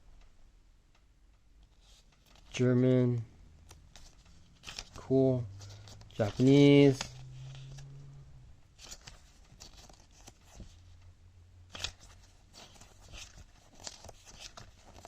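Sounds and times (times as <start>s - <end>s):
paper pages rustling: 1.7s - 2.5s, 3.7s - 8.1s, 8.7s - 10.9s, 11.7s - 15.0s.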